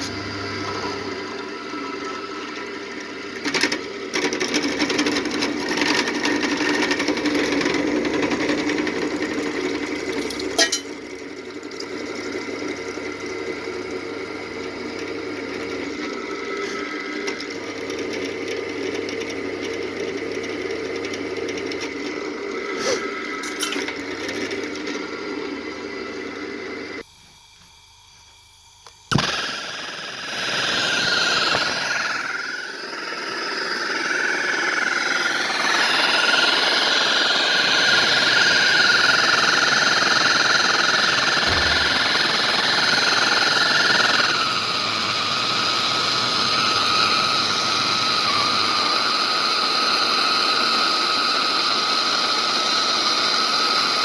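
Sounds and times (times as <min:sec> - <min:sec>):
electric power tool motor: 0:00.0 - 0:10.8, 0:28.8 - 0:54.0.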